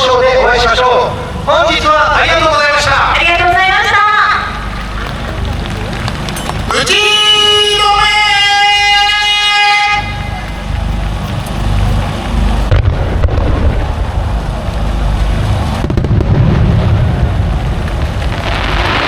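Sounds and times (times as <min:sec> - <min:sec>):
fireworks booming: 0:12.1 - 0:19.0.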